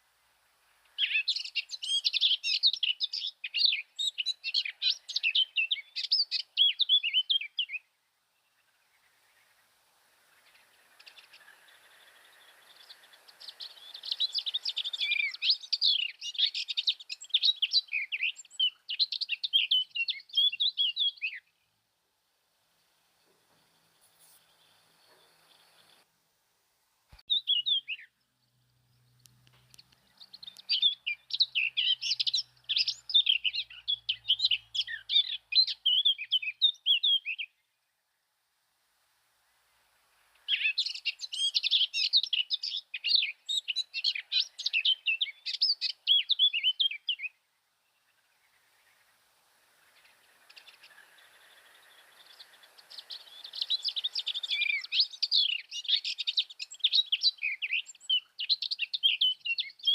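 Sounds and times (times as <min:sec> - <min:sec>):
birds twittering: 0:00.6 - 0:21.6, 0:27.3 - 0:37.8, 0:40.3 - 0:59.9.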